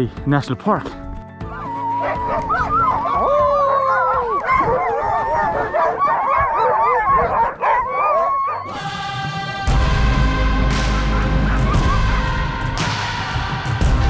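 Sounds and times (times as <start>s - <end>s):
music: 0.0s - 5.8s, 8.6s - 14.0s
sled dogs howling and yipping: 1.5s - 14.0s.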